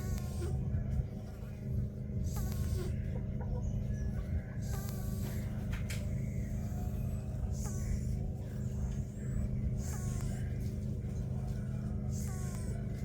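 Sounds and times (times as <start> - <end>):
cat snoring with whistle: 0.0 - 0.6, 2.2 - 3.0, 4.6 - 5.6, 6.2 - 10.5, 12.1 - 12.8
steady low hum: 0.0 - 13.0.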